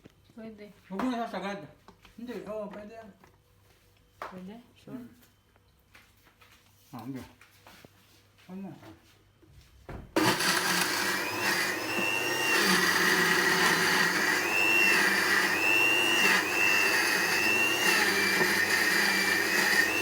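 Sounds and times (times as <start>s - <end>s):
blender motor whining: 10.2s - 20.0s.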